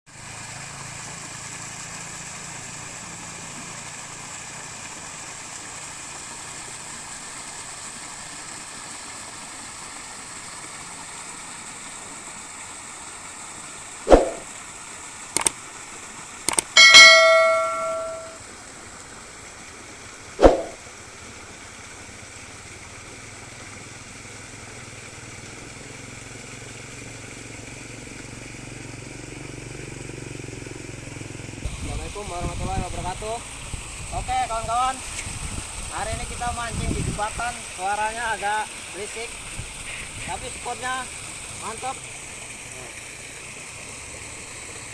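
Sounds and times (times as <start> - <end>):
steady rushing noise: 14.1 - 14.4, 20.4 - 20.8
ringing bell-like ding: 16.8 - 18.4.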